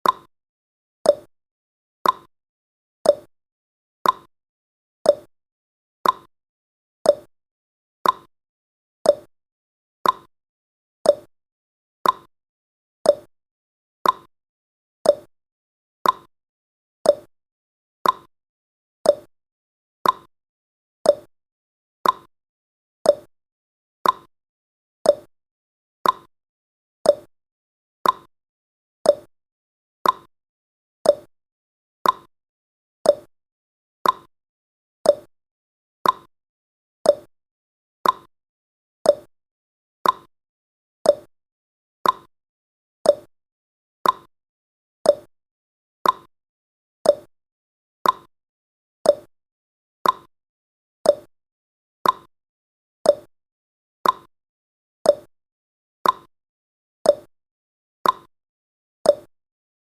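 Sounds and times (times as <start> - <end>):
countdown timer ticking: 35.1 - 35.3, 37.1 - 37.3, 39.1 - 39.3, 41.1 - 41.3, 43.1 - 43.3, 45.1 - 45.3, 47.1 - 47.3.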